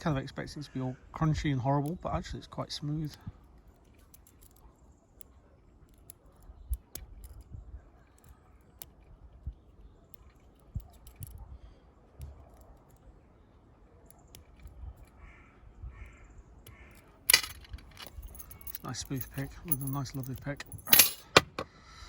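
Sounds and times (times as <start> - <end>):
lock pick clicks: 3.0 - 4.6, 5.9 - 7.5, 8.1 - 11.4, 16.6 - 21.7
handling rumble: 17.2 - 21.7.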